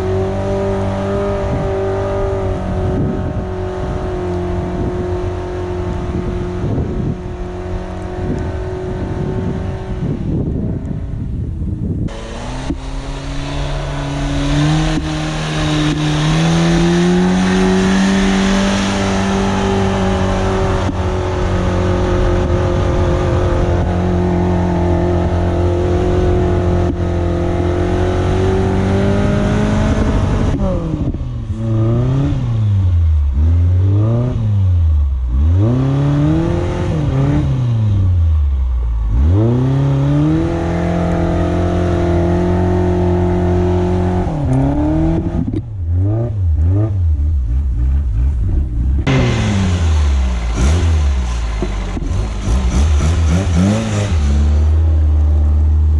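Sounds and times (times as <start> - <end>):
engine revving: 0.0 - 55.9
rushing noise: 11.9 - 26.8, 45.7 - 55.3.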